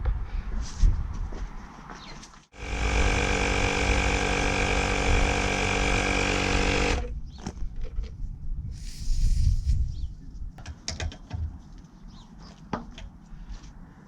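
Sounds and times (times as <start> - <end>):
tyre inflator motor running: 2.6 - 7.1.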